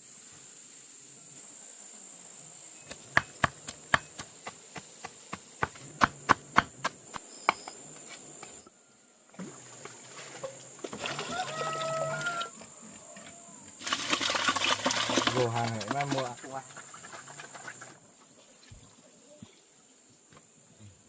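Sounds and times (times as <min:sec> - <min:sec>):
high insect buzz: 0:00.0 - 0:08.7
sharp knocks or chops: 0:02.9 - 0:07.8.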